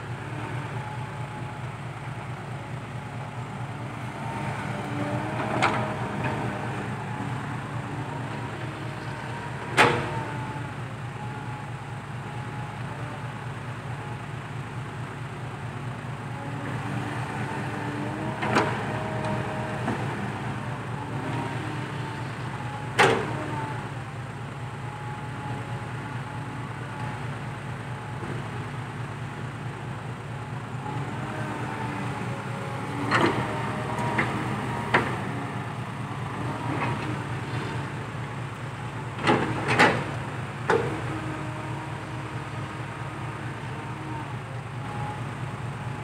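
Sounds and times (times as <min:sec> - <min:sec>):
excavator diesel engine: 0:00.0 - 0:46.0.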